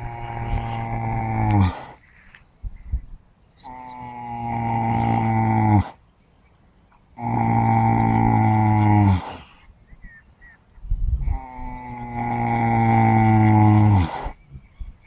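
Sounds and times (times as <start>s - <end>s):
horse snoring: 0.0s - 2.0s, 3.6s - 6.0s, 7.2s - 9.6s, 11.2s - 14.4s.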